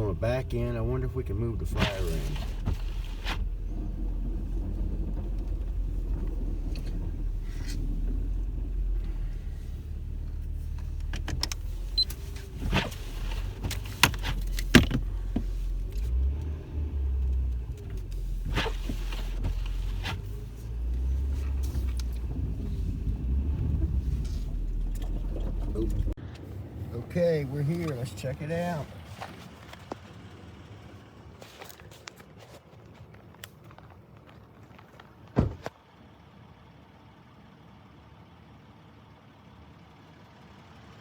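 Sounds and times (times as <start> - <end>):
van engine running: 0.0 - 41.0
sharp clicks and knocks: 10.3 - 16.2.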